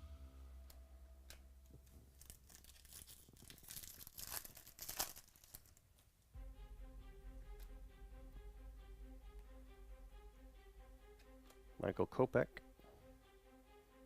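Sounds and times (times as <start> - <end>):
soft background music: 0.0 - 5.1, 6.4 - 14.0
packaging rustling and tearing: 1.7 - 5.8.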